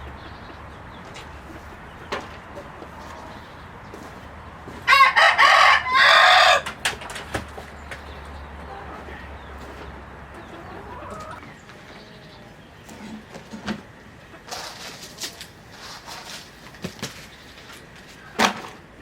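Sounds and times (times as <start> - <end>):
chickens clucking: 0.0 - 19.0
rooster crowing: 4.8 - 6.8, 10.5 - 11.5.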